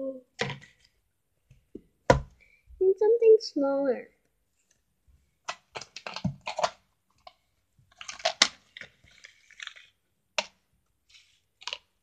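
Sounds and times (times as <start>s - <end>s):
objects clicking and rustling: 5.5s - 10.5s.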